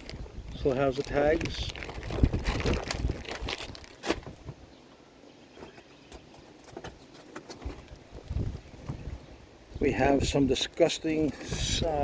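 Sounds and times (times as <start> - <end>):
plastic packaging crinkling: 0.0 - 4.2.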